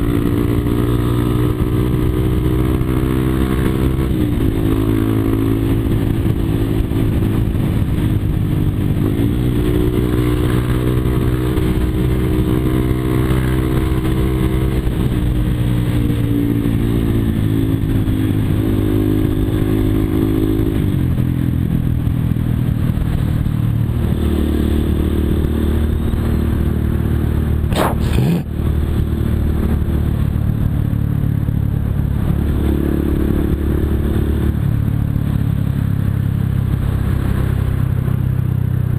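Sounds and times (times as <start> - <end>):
motorcycle engine revving: 23.0 - 35.4
sharp knock: 27.7 - 28.4.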